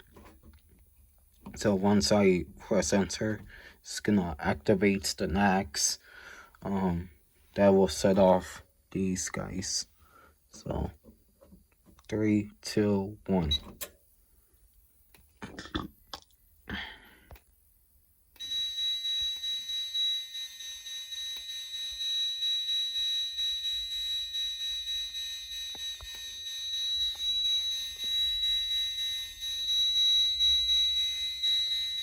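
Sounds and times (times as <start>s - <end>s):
high-pitched alarm tone: 18.4s - 32.0s.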